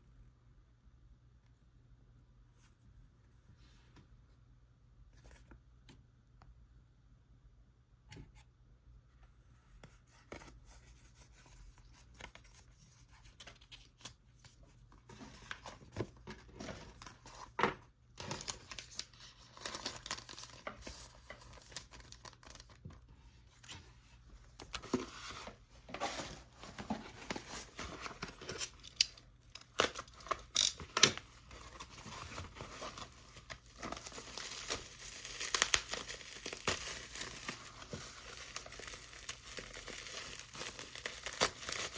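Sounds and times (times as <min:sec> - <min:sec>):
wrapping crinkling: 0:26.0 - 0:41.9
packaging tearing: 0:27.4 - 0:41.9.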